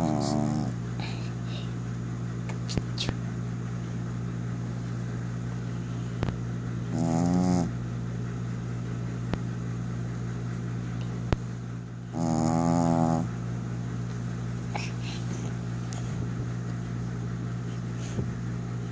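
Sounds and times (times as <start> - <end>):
person snoring: 0.0 - 1.2, 6.9 - 7.7
steady low hum: 0.0 - 18.9.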